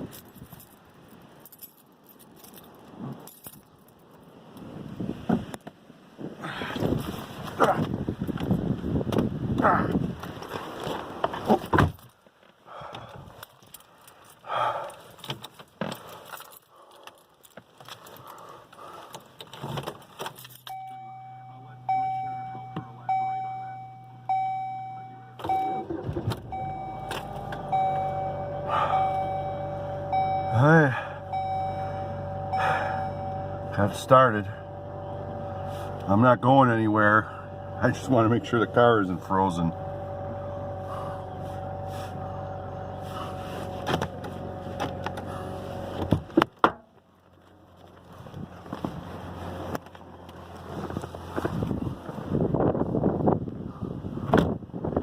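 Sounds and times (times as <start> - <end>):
car engine cranking and running: 6.4 - 55.0
dashboard warning chime: 20.4 - 43.8.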